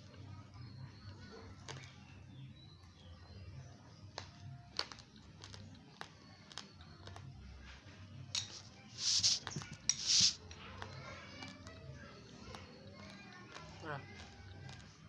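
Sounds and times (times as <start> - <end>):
raw rice being chewed: 4.2 - 7.6, 8.4 - 10.4
hissing noise: 8.4 - 10.4.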